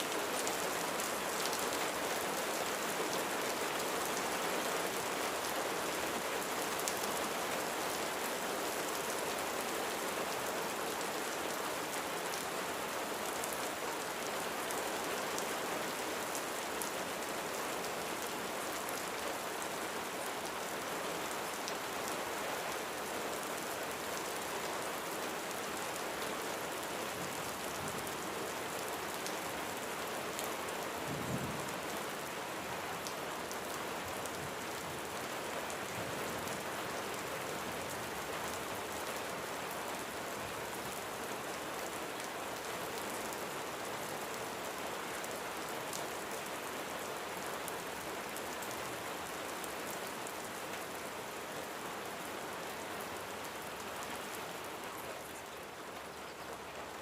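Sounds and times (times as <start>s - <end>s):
steady rain hiss: 0.0s - 57.0s.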